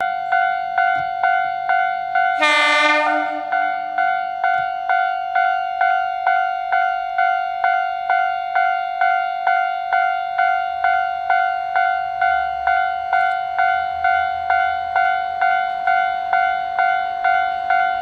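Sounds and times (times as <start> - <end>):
level crossing warning bell: 0.0 - 18.0
train horn: 2.3 - 3.8.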